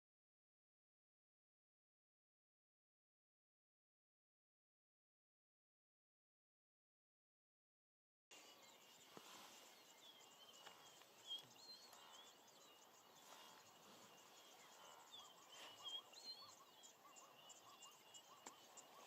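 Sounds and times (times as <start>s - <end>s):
birds chirping: 8.3s - 19.0s.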